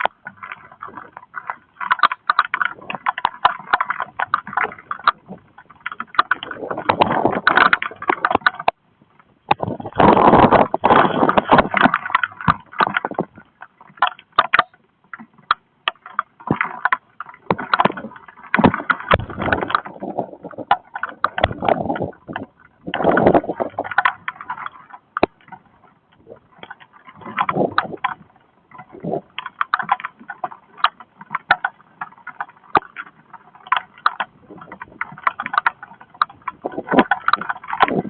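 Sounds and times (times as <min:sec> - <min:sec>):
wind buffeting microphone: 0:02.6 - 0:13.6, 0:17.4 - 0:29.6, 0:32.7 - 0:38.0
strong wind gusts: 0:06.2 - 0:08.5, 0:09.5 - 0:13.4, 0:17.7 - 0:24.0, 0:27.2 - 0:29.3, 0:36.2 - 0:38.0.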